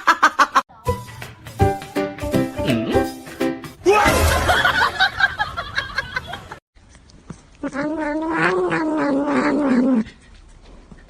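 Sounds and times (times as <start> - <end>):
cat yowling: 7.6 - 10.1.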